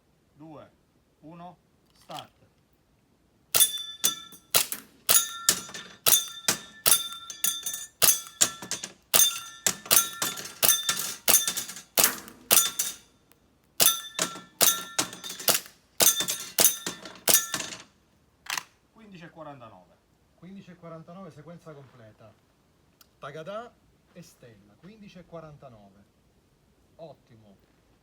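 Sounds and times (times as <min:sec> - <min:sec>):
airsoft gun shots: 0:03.6 - 0:12.8
metal target ringing: 0:03.6 - 0:13.1, 0:13.8 - 0:17.8.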